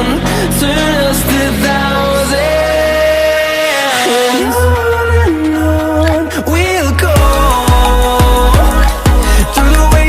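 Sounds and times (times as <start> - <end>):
person singing: 0.0 - 10.0
deep bass kicks: 7.0 - 10.0.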